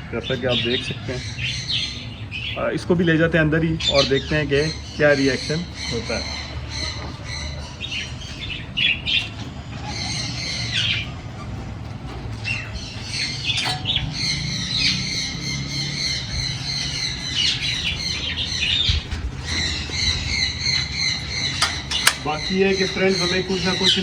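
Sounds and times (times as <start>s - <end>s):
budgerigars chattering: 0.0s - 24.0s
low rumble: 6.4s - 22.8s.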